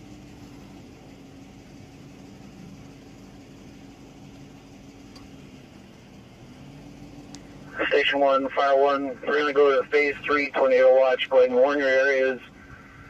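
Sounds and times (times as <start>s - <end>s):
engine idling hum: 0.0s - 13.0s
faint tick: 5.1s - 5.3s, 7.3s - 7.5s.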